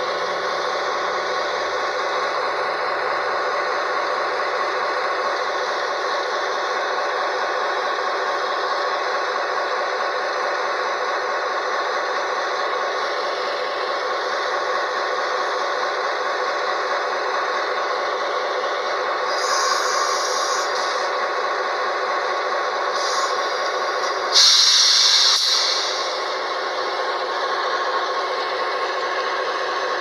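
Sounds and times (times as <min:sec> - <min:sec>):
locomotive engine droning: 0:00.0 - 0:30.0
air hissing: 0:19.3 - 0:21.1, 0:22.9 - 0:26.4.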